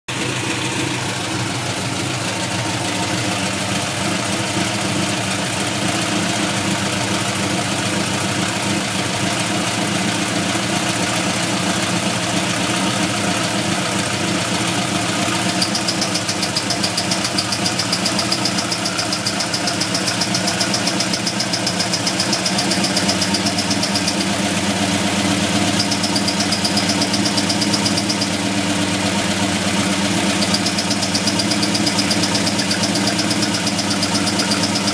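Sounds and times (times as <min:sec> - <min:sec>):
engine idling: 0:00.1 - 0:34.9
rapid high-pitched ticking: 0:15.3 - 0:24.6, 0:25.3 - 0:28.8, 0:30.1 - 0:34.9.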